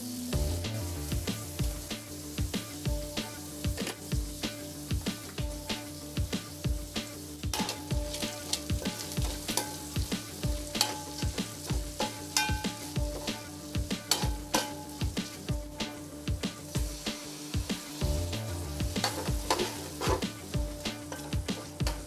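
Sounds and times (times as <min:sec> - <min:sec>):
background music with steady beat: 0:00.0 - 0:22.0
food sizzling in a pan: 0:00.0 - 0:22.0
spoon clicking against pan: 0:07.6 - 0:10.0.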